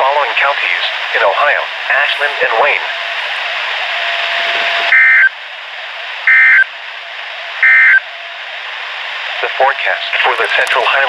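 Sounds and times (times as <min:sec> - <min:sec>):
radio static: 0:00.0 - 0:05.3, 0:09.4 - 0:11.0.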